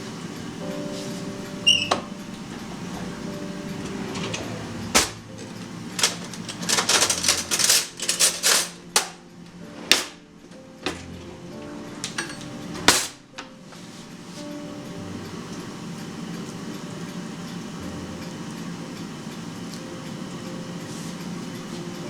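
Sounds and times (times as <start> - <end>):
steady low hum: 0.0 - 7.7
kitchen knocks and clatters: 1.6 - 9.2, 12.0 - 13.5.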